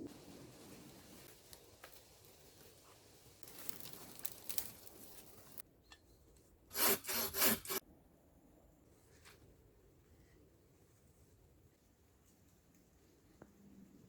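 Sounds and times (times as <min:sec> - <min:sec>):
scraping rasping strokes: 0:06.7 - 0:07.8.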